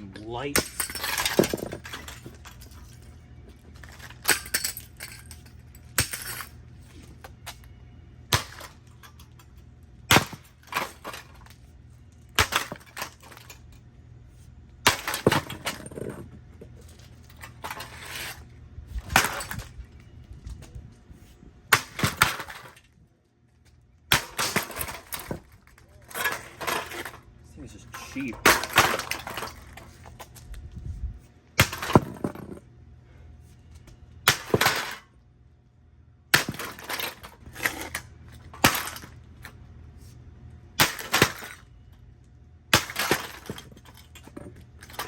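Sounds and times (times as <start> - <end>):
clatter of breaking parts: 0.6 - 13.9, 14.8 - 20.0, 21.7 - 23.0, 23.6 - 27.3, 27.9 - 30.5, 31.6 - 32.7, 34.2 - 35.1, 36.3 - 39.6, 40.8 - 41.8, 42.7 - 45.0.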